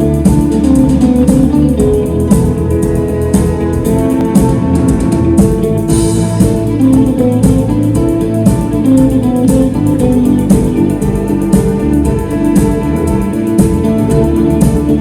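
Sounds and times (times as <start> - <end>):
drum beat: 0.0 - 15.0
electric guitar: 0.0 - 15.0
symphony orchestra: 0.0 - 15.0.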